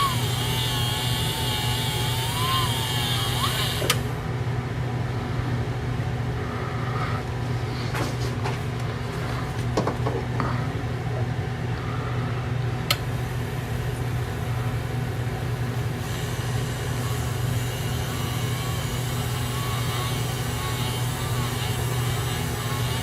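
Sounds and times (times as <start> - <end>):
machine motor humming: 0.0 - 4.5, 12.6 - 23.0.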